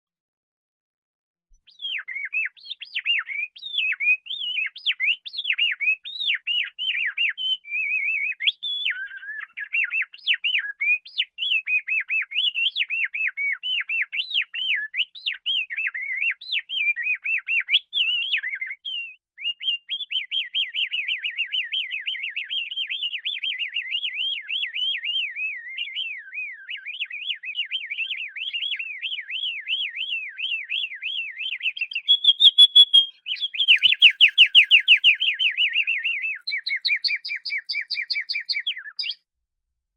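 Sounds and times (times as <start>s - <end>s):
canary singing: 19.6s - 39.2s.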